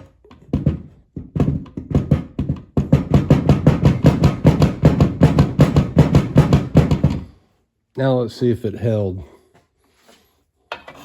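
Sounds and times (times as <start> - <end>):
music with percussive beat: 1.3 - 7.1.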